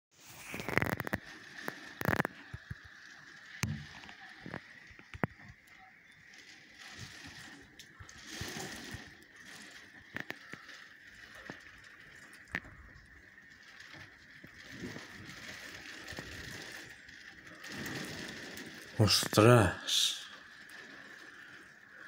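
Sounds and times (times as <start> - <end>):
storm wind: 6.2 - 21.9.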